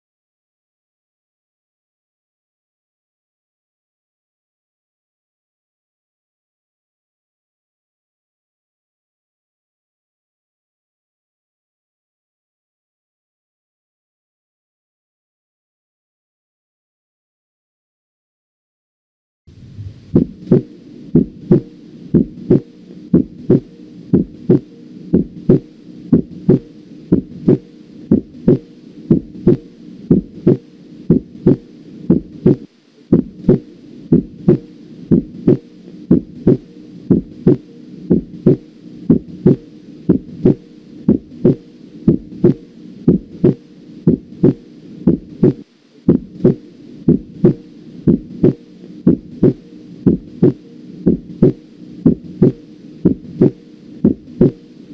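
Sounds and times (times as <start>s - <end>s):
heartbeat through stethoscope: 19.6s - 54.7s.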